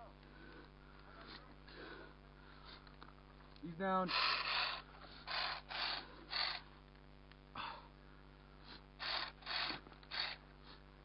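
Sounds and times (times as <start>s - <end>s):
heavy breathing close to microphone: 0.2s - 3.0s, 7.5s - 9.1s.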